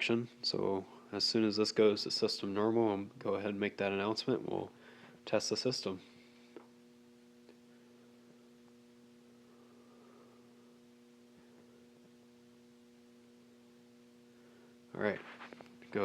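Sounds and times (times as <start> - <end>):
faint electrical hum: 0.0 - 16.0.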